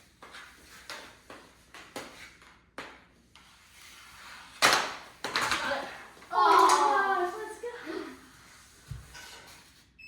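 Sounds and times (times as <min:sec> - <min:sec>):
hockey sticks knocking ball: 0:00.2 - 0:03.5, 0:04.5 - 0:07.4.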